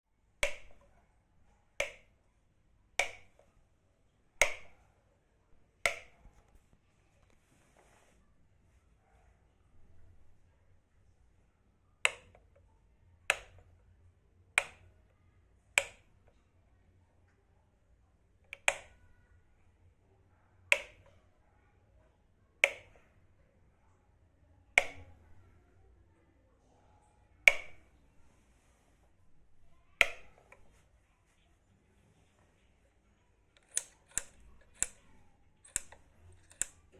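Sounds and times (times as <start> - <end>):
switch clicking: 0.4 - 0.9, 1.8 - 2.1, 3.0 - 3.4, 4.4 - 4.8, 5.9 - 6.5, 13.3 - 13.7, 14.6 - 14.9, 18.5 - 19.1, 20.7 - 21.1, 22.6 - 23.0, 24.8 - 25.3, 27.5 - 27.9, 29.9 - 30.7, 33.6 - 36.9.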